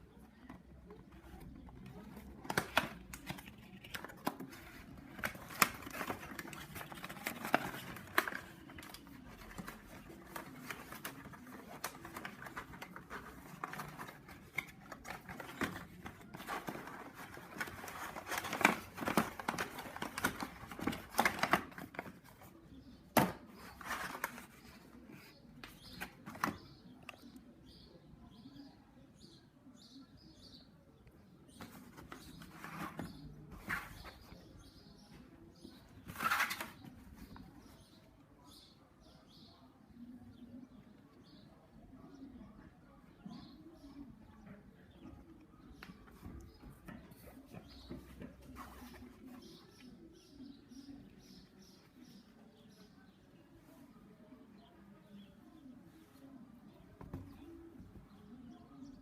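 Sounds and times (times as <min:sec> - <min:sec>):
packaging rustling: 0:01.9 - 0:22.2.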